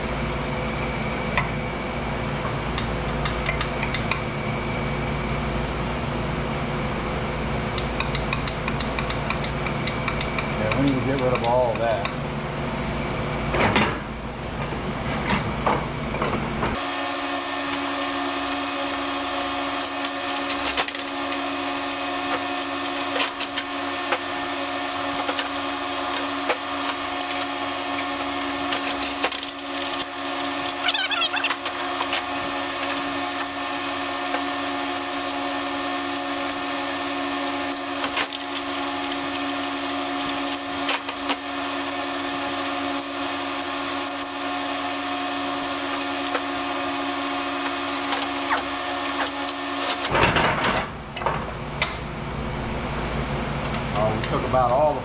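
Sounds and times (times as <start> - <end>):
power tool whining: 16.8 - 50.1.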